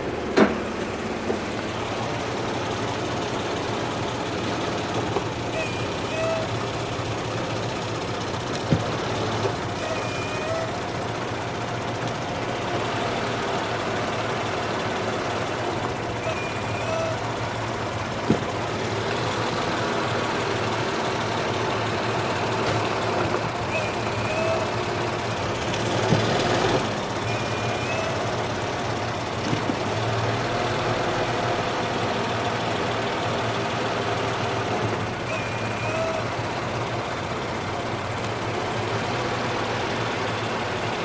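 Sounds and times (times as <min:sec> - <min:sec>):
car engine idling: 0:00.0 - 0:41.0.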